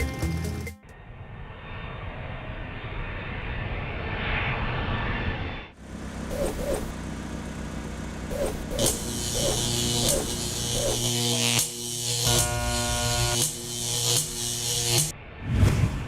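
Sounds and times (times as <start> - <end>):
jet engine noise: 0.9 - 10.3
steady engine noise: 5.7 - 13.6.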